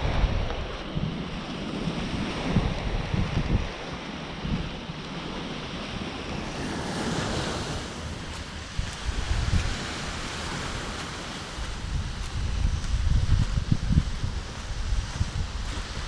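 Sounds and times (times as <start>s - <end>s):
surf washing onto beach: 0.0s - 16.0s
wind buffeting microphone: 0.0s - 16.0s.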